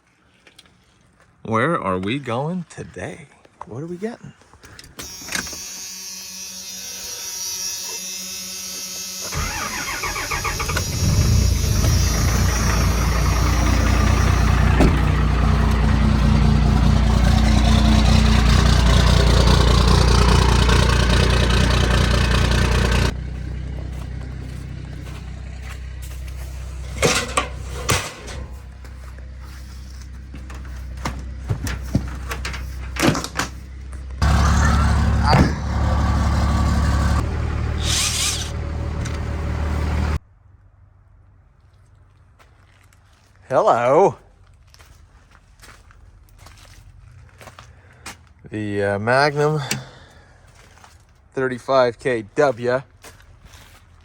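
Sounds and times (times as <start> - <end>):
engine cranking and running: 8.0 - 40.2
low hum: 9.4 - 30.8.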